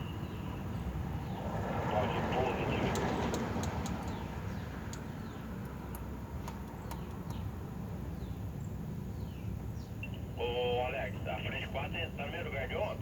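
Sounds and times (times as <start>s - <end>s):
light clicks: 2.9s - 4.2s.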